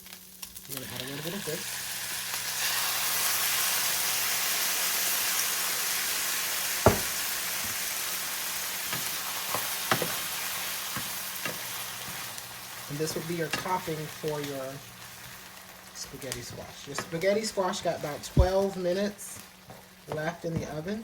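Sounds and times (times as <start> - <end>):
meat sauce sizzling in a frying pan: 0.0 - 21.0
utensil knocking against pan: 6.9 - 7.2.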